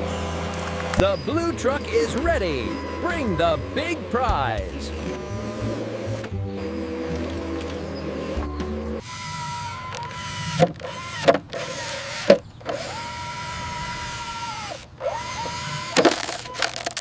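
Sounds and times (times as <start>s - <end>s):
small electric motors whining: 0.0s - 17.0s
sharp clicks and knocks: 9.9s - 12.8s.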